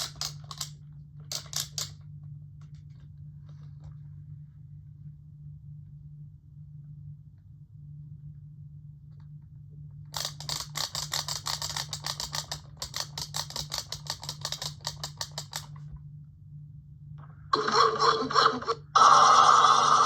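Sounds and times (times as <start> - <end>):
rapid clicking: 10.2 - 15.8
toy electronic sound effects: 17.6 - 20.0.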